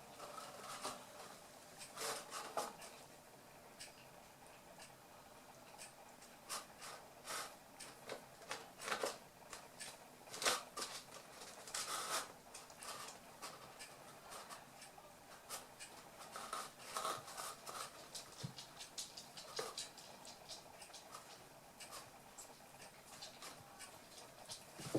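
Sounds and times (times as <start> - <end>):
puppy paws scrabbling: 16.4 - 22.0.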